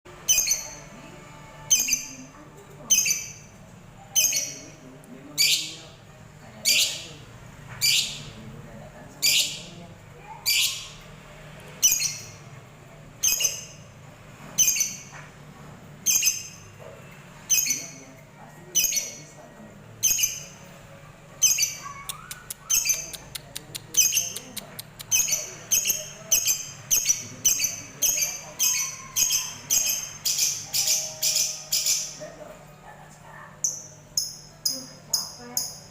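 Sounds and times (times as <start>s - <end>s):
lovebird squawking: 21.4s - 23.4s
quick sharp ticks: 22.1s - 25.1s.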